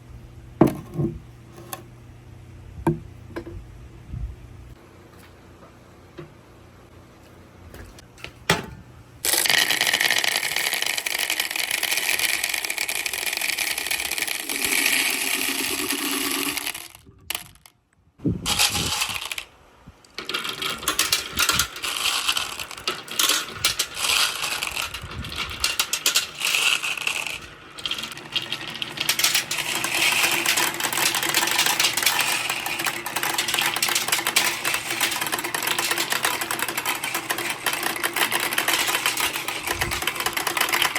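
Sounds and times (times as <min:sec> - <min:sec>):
marble-run balls clattering: 0:00.6 - 0:01.8, 0:09.3 - 0:17.7, 0:18.5 - 0:19.5, 0:20.1 - 0:40.9.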